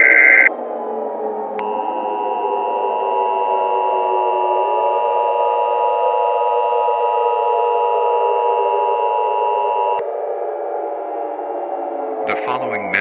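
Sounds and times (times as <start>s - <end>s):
two-tone alert alarm: 0.0s - 0.5s, 1.6s - 10.0s.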